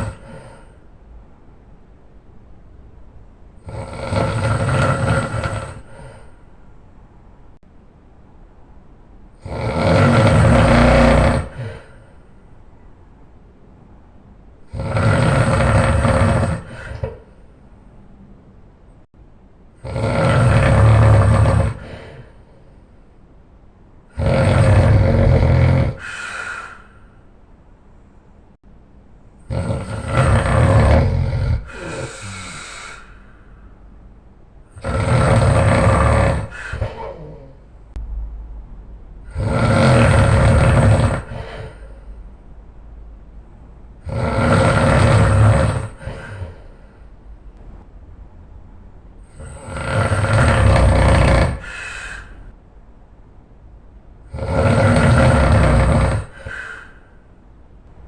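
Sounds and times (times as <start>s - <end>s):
man snoring loudly: 0.0s - 0.7s, 3.6s - 6.3s, 9.4s - 12.0s, 14.7s - 17.2s, 19.8s - 22.3s, 24.1s - 26.5s, 29.5s - 33.1s, 34.7s - 37.5s, 39.3s - 41.9s, 44.0s - 46.6s, 49.2s - 51.9s, 54.3s - 56.8s.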